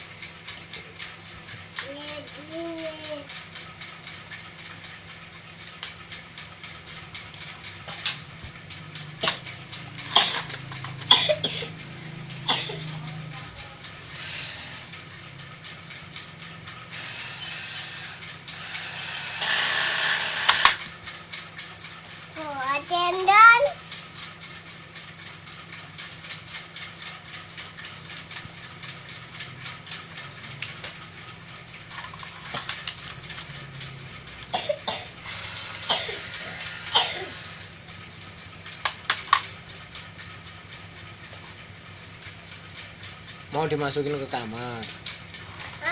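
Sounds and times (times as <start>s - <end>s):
toy clicking: 0.0s - 45.9s
small child coughing: 9.2s - 9.4s, 10.2s - 10.5s, 11.1s - 11.8s, 12.4s - 13.0s, 34.5s - 35.2s, 35.8s - 37.6s.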